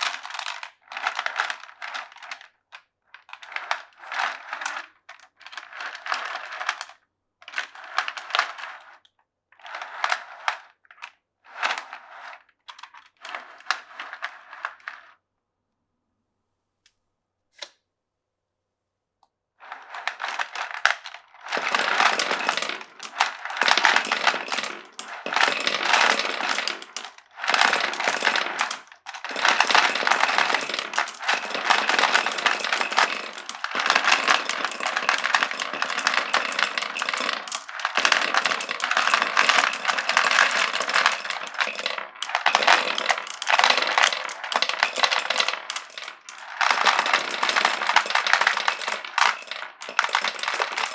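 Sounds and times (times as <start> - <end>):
marbles rattling down wooden run: 0.0 - 2.5, 3.4 - 6.9, 19.6 - 50.9.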